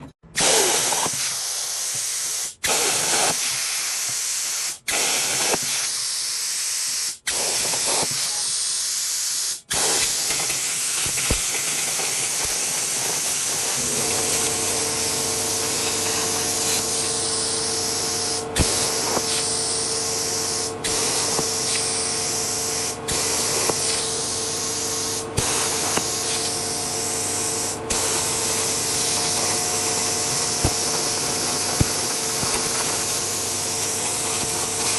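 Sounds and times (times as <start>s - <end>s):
plasma cutter torch hissing: 0.4s - 34.9s
steady machine hum: 12.2s - 34.9s.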